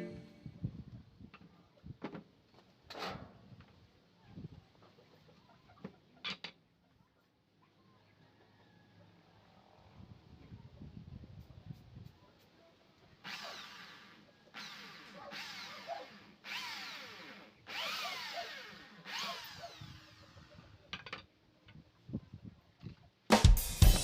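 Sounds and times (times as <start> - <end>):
power tool bursts: 13.2 - 20.4.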